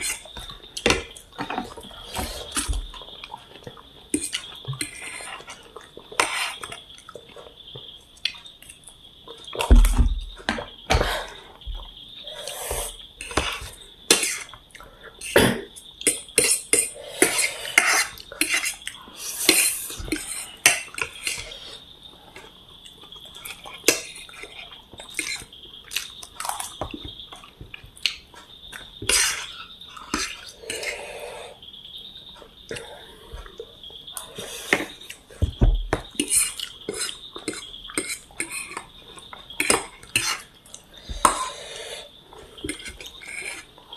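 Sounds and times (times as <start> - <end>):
cutlery scraping on plate: 16.4 - 18.8, 36.2 - 38.9, 39.6 - 40.5.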